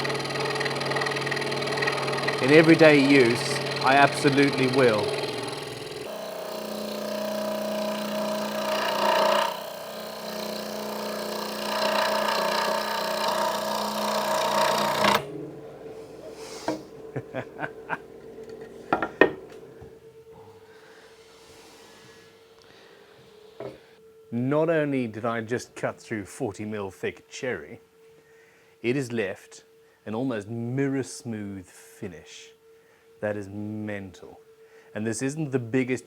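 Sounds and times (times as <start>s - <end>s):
scroll saw cutting wood: 0.0s - 19.9s.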